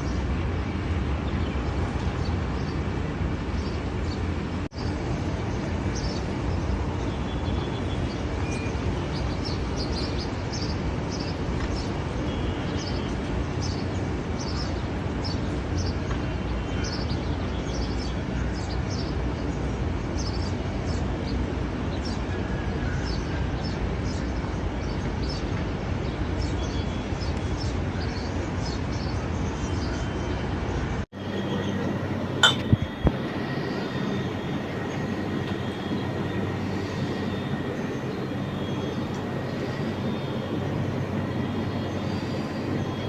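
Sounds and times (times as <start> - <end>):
low rumbling background noise: 31.2 - 43.0
small birds chirping: 31.2 - 43.0.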